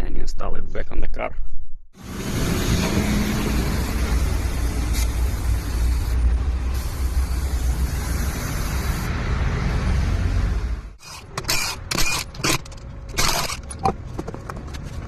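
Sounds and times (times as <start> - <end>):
air compressor running: 2.0 - 9.1.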